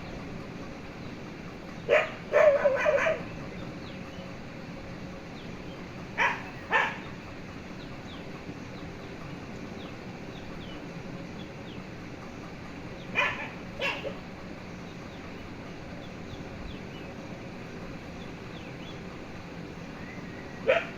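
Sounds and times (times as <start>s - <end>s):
steady background noise: 0.0s - 20.9s
dog barking: 1.9s - 3.3s, 6.2s - 7.1s, 13.1s - 14.2s, 20.6s - 20.9s.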